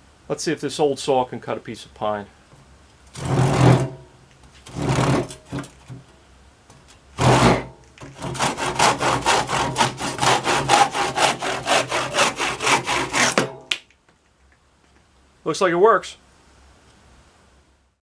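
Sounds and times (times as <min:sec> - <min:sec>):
hand saw cutting wood: 0:03.1 - 0:04.0, 0:04.6 - 0:05.8, 0:07.2 - 0:13.6.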